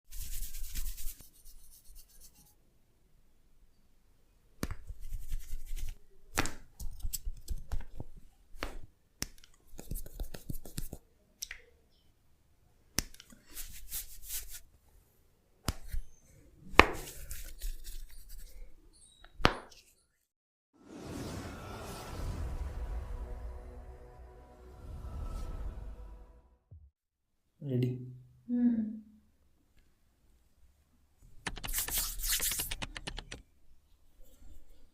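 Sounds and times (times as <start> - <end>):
hands rubbing hair: 9.7 - 11.0, 13.4 - 14.7, 16.8 - 18.6, 31.4 - 33.4.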